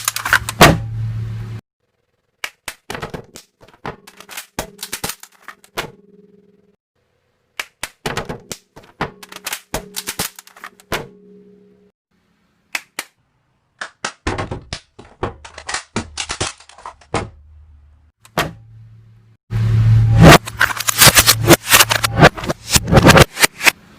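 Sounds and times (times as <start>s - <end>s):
low hum: 0.8s - 1.6s, 18.6s - 23.1s
deeper hum: 18.6s - 23.1s.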